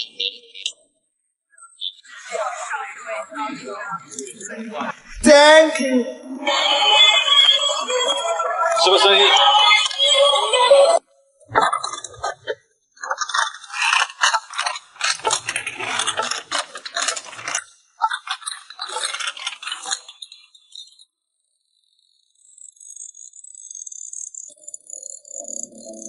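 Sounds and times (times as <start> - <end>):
small hard objects rattling: 13.2 - 20.9.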